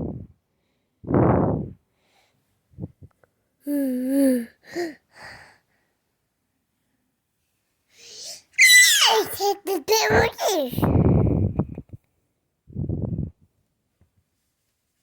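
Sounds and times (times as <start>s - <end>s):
baby breathy huff: 8.0s - 9.5s
baby cooing: 8.0s - 10.9s.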